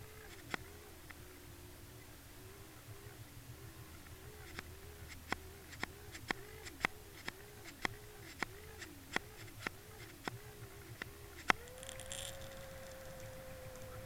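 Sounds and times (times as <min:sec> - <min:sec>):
wavering underwater hum: 0:00.0 - 0:14.0
sharp underwater clicks: 0:04.4 - 0:14.0.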